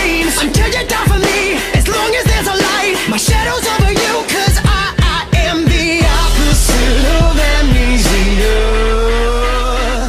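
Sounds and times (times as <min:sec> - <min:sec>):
heavy beat: 0:00.0 - 0:10.0
pop song with sung vocals: 0:00.0 - 0:10.0
deep sustained bass: 0:06.0 - 0:10.0.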